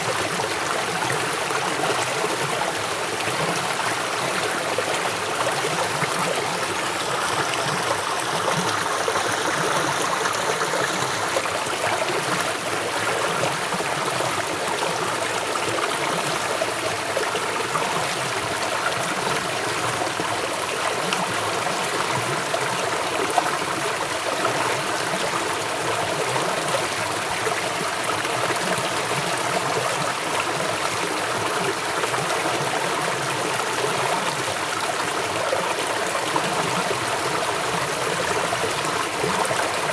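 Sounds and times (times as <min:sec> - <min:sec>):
river water rushing: 0:00.0 - 0:16.0.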